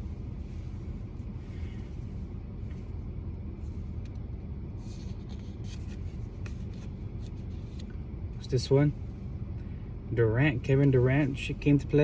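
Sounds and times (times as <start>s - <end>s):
steady low rumble: 0.0s - 12.0s
trading cards rustling and ticking: 4.8s - 8.0s.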